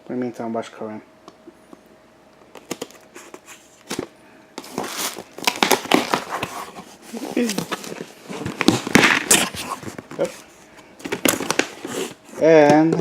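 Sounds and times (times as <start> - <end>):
packaging rustling and crackling: 2.5 - 12.3.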